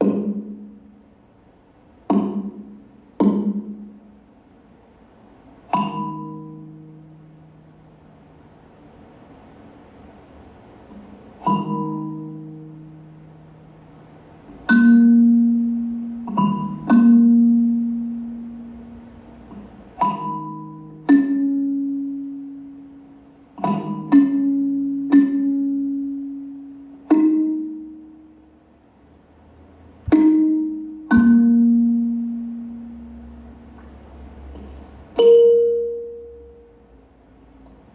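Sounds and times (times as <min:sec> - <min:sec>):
pitched percussion notes ringing: 0:14.6 - 0:28.4, 0:30.1 - 0:36.9.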